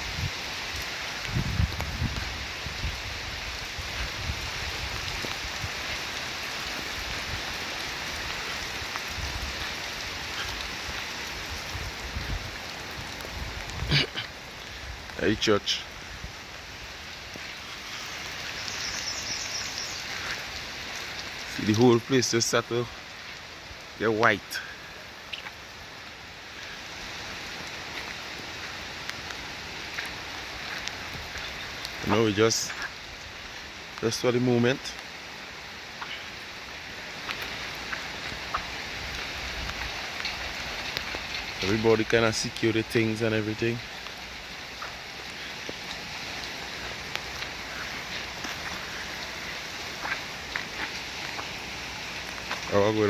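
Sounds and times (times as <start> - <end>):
wind rumble on microphone: 0.0 - 15.2, 37.3 - 42.6
heavy rain falling: 0.0 - 53.0.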